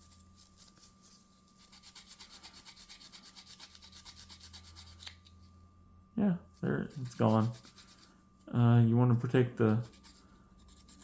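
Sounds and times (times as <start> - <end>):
sanding rubbing on wood: 1.6 - 5.1, 6.8 - 8.0.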